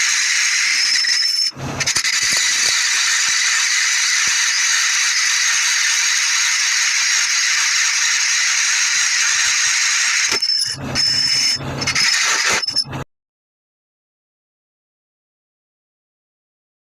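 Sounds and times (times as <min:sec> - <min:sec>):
hissing workshop noise: 0:00.0 - 0:13.0.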